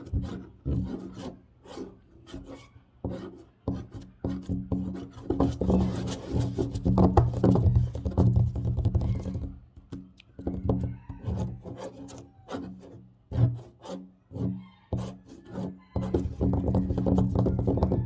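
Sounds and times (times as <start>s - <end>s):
tapping on a tabletop: 6.8s - 11.2s, 16.0s - 18.0s.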